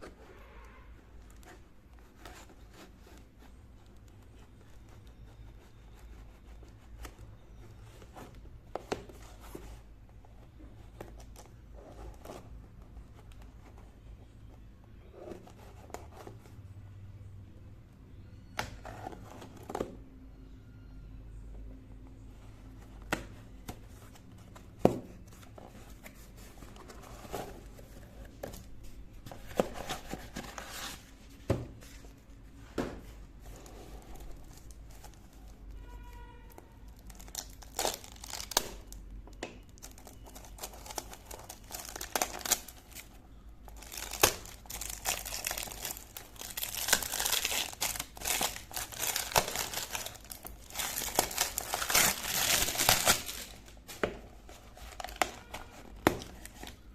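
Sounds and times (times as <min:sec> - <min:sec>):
wrapping crinkling and tearing: 0:36.9 - 0:39.0, 0:39.7 - 0:56.8
packaging clicks and knocks: 0:43.7 - 0:56.8.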